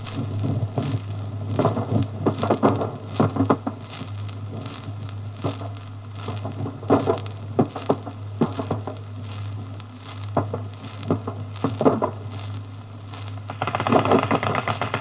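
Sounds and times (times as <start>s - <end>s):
low recording hum: 0.0s - 15.0s
gunshots: 13.5s - 15.0s.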